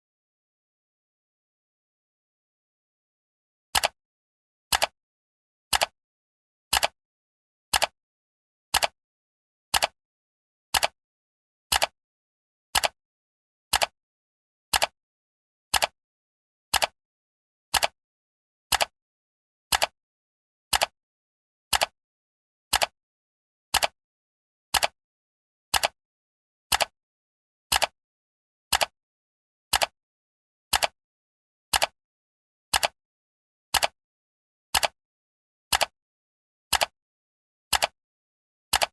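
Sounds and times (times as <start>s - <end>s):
clock ticking: 34.8s - 35.0s.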